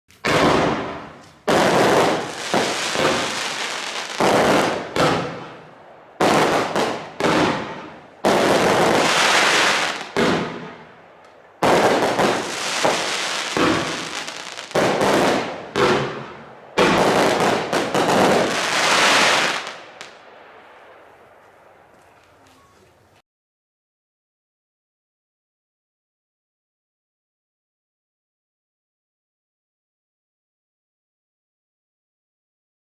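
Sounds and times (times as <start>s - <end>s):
firework crackle: 0.2s - 10.9s, 11.6s - 21.2s
firework barrage firing: 0.2s - 21.1s.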